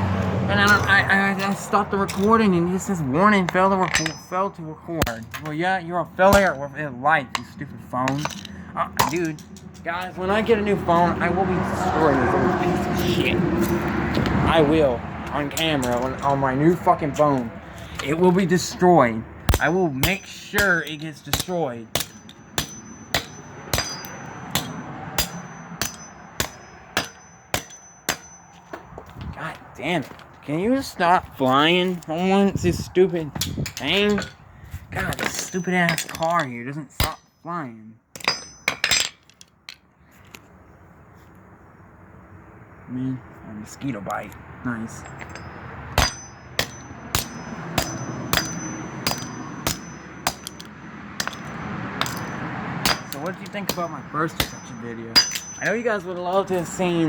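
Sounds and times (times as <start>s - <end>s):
metallic clangs on toy car: 3.5s - 4.4s, 38.2s - 39.8s, 45.0s - 56.8s.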